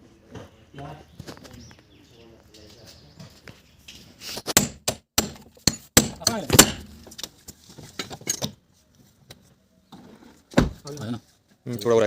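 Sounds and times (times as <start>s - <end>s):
sharp metal knocks and clanks: 4.6s - 7.2s.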